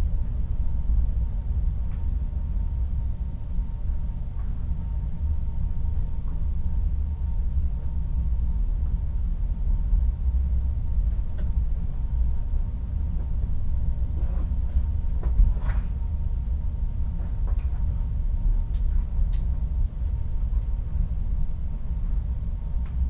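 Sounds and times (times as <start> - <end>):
ship engine rumble: 0.0 - 23.0
faint clicks and creaks: 17.2 - 19.6.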